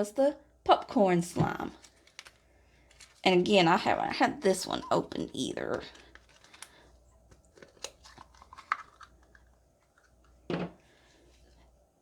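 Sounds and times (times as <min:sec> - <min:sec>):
plastic lid clicks and crinkles: 0:05.7 - 0:10.6.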